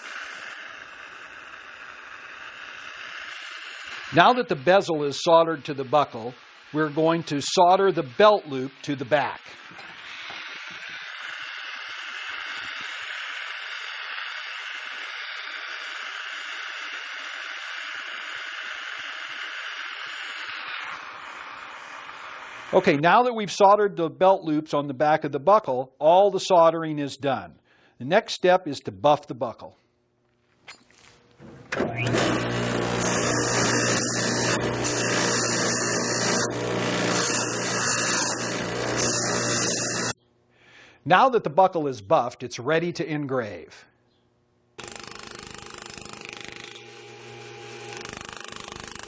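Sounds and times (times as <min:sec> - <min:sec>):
torch flame hissing: 0:00.0 - 0:04.9, 0:09.4 - 0:22.8
bench buffing machine running: 0:00.0 - 0:22.8, 0:31.4 - 0:40.2, 0:44.8 - 0:49.0.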